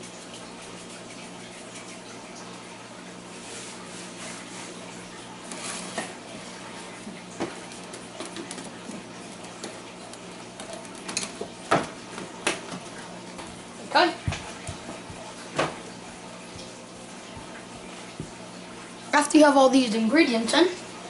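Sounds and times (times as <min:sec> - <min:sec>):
kitchen utensils clicking: 0:10.6 - 0:12.0.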